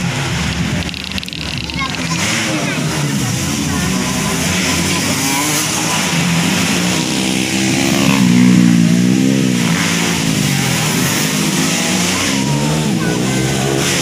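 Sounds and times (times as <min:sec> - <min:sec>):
dirt bike engines revving: 0:00.0 - 0:14.0.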